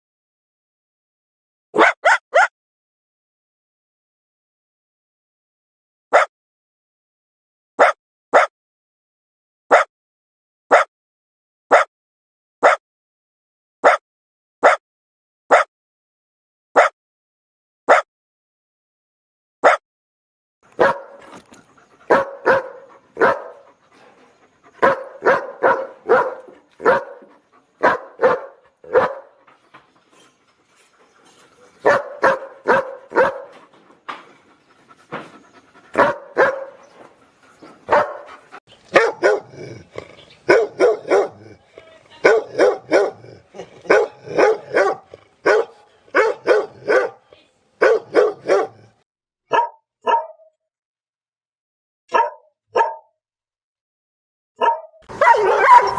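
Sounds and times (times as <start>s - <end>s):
dog barking: 1.8s - 2.5s, 6.1s - 6.3s, 7.8s - 8.5s, 16.8s - 17.0s, 17.9s - 18.1s, 20.8s - 21.5s, 22.1s - 23.7s, 24.8s - 29.4s, 31.8s - 33.6s, 36.0s - 36.8s, 37.9s - 39.9s, 40.5s - 50.5s, 52.1s - 53.1s, 54.6s - 55.9s.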